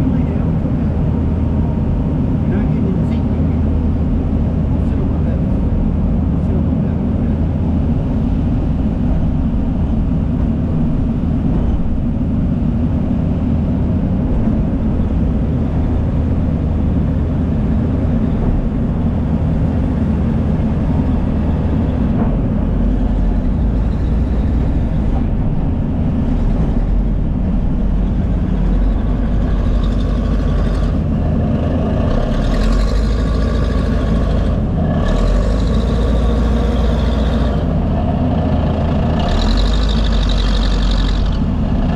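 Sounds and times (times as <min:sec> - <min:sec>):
heavy diesel machinery running: 0:00.0 - 0:41.9.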